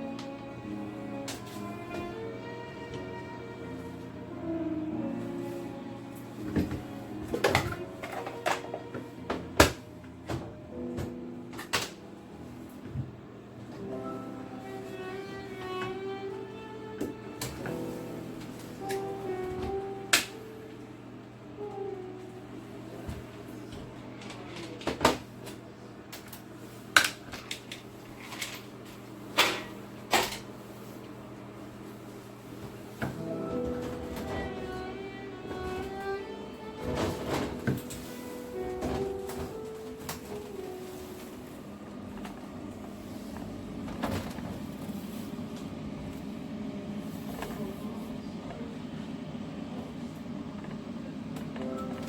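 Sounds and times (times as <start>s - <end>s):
steady low hum: 25.3s - 52.0s.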